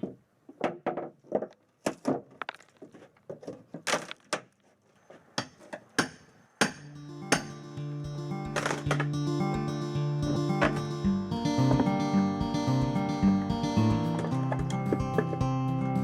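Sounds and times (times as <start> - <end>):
hammer on wooden boards: 5.4 - 7.5
music: 6.8 - 16.0.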